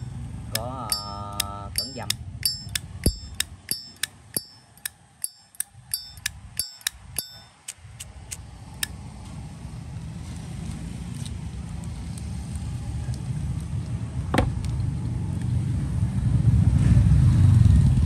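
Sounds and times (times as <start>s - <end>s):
lighter lid metallic clinks: 0.6s - 7.8s.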